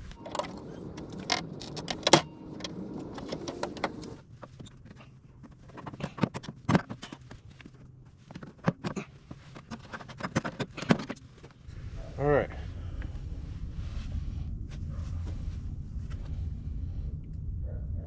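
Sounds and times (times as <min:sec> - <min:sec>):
hand tools and metal parts clinking: 0:00.0 - 0:04.2.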